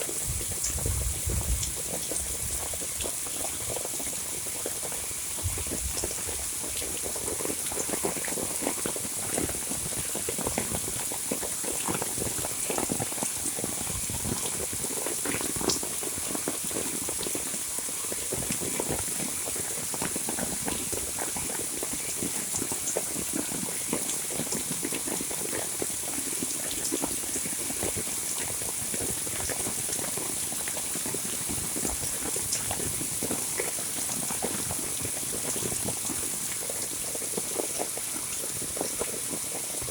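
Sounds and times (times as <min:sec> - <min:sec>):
high rain hiss: 0:00.0 - 0:15.4
heavy rain drops splashing: 0:00.0 - 0:39.9
rain rushing: 0:00.0 - 0:39.9.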